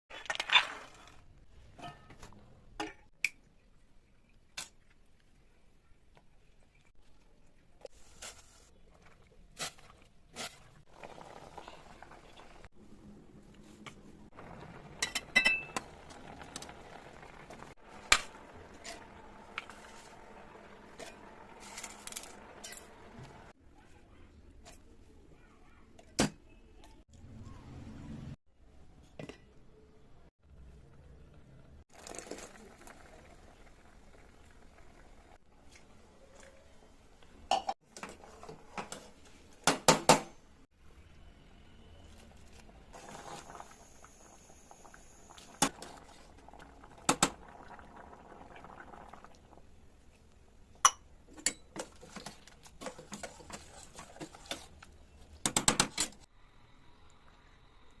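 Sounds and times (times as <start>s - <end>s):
utensils clinking on cookware: 15.0s - 16.0s.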